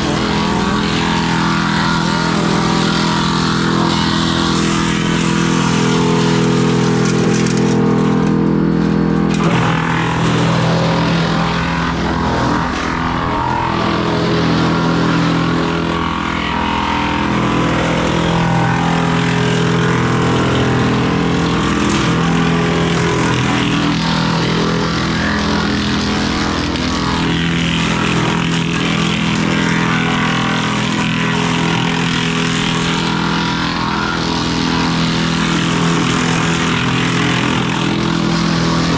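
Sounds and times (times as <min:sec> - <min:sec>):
engine running loudly: 0:00.0 - 0:38.9.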